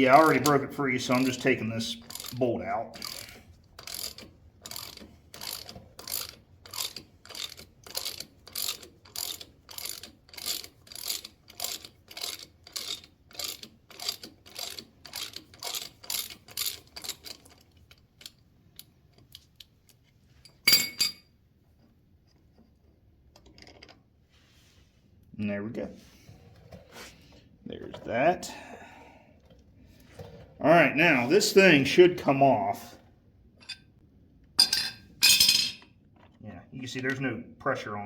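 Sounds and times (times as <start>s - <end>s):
hand ratchet clicking: 2.0s - 2.4s, 3.0s - 17.6s.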